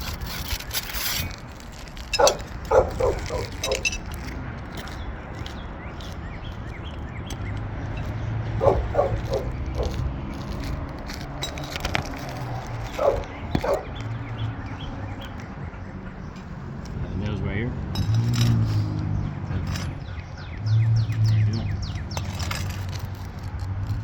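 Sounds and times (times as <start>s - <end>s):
dog barking: 2.2s - 4.3s, 8.5s - 10.1s, 12.9s - 14.0s.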